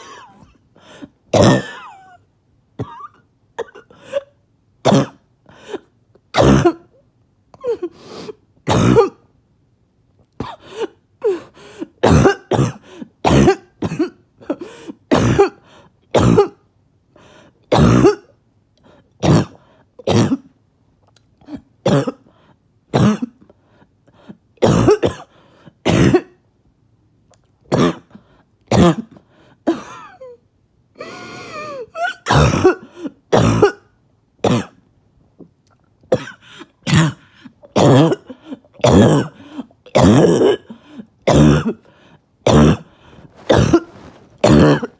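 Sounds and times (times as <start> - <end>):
person coughing harshly: 0.0 - 0.6, 1.3 - 2.2, 2.8 - 5.8, 6.4 - 6.9, 8.7 - 9.3, 12.0 - 15.6, 16.2 - 16.6, 17.7 - 18.3, 19.2 - 20.5, 21.8 - 22.3, 22.9 - 23.4, 24.6 - 26.4, 27.7 - 30.4, 31.0 - 34.8, 36.1 - 41.9, 42.5 - 44.9.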